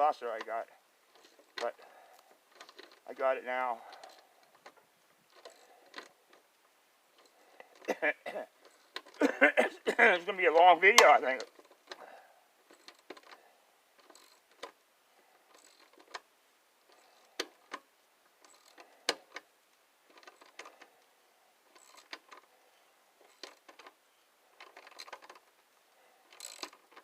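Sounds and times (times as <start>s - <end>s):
socket wrench ratcheting: 14.0s - 14.7s, 15.5s - 16.2s, 21.7s - 22.4s, 26.3s - 27.0s.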